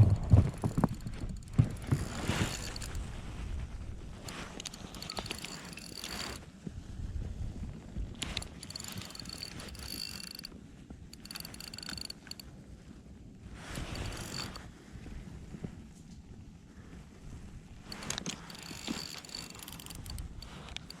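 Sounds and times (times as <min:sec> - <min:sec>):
fishing reel gears whirring: 0:00.0 - 0:03.2, 0:04.2 - 0:06.5, 0:08.2 - 0:12.5, 0:13.8 - 0:14.6, 0:17.9 - 0:21.0.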